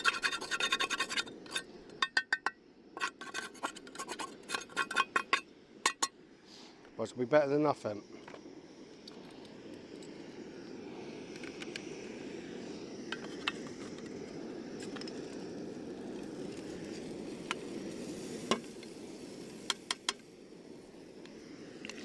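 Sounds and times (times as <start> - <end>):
food sizzling in a frying pan: 14.8 - 22.0.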